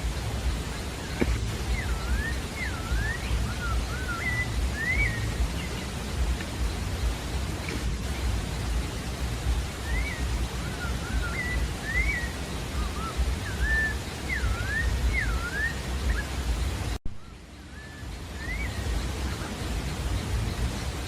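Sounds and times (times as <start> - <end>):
bird singing whistled notes: 0.0 - 8.8, 9.4 - 21.0
low rumble: 0.0 - 13.7
steady hiss: 0.0 - 21.0.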